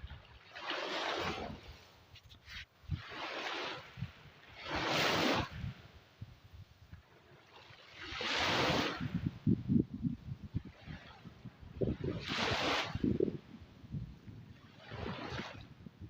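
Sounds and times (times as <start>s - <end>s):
ocean waves breaking: 0.0s - 6.1s, 7.0s - 9.4s, 10.6s - 13.4s, 14.4s - 15.8s
wind buffeting microphone: 0.0s - 7.0s, 8.0s - 16.0s.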